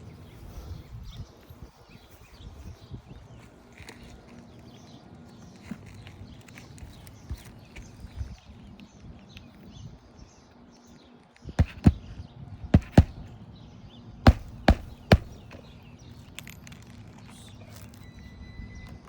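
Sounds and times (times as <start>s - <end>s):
hammer knocking on shingle roof: 11.6s - 12.1s, 12.8s - 13.3s, 14.3s - 15.6s.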